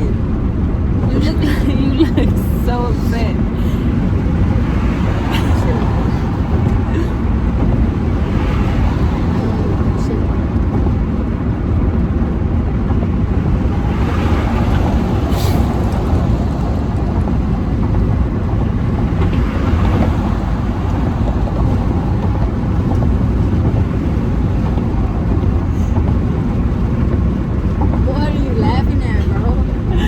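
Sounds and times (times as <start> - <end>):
road and wind noise in car: 0.0 - 30.0.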